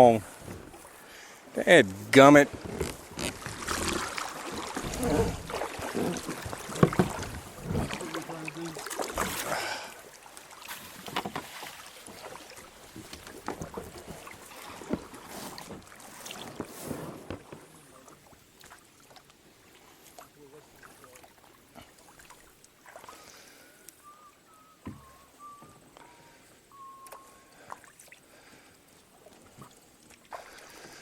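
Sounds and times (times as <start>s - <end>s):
paddle strokes splashing: 0.2s - 23.7s, 27.0s - 31.0s
knocks and scrapes against boat: 0.3s - 1.0s, 1.9s - 8.2s, 10.7s - 17.8s.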